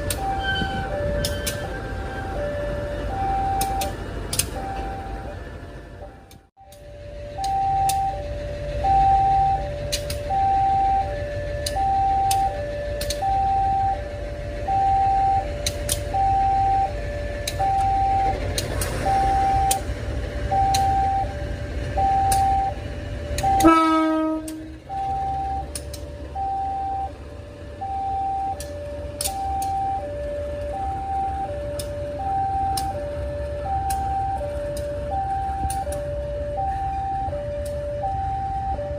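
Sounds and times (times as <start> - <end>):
two-tone crossing alarm: 0.0 - 38.9
horn blast: 23.4 - 24.9.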